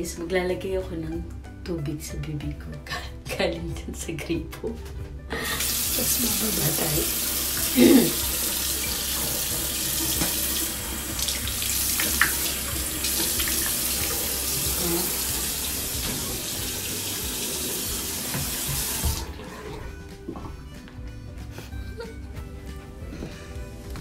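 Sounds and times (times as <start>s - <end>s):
tap water running into sink: 5.5s - 20.0s.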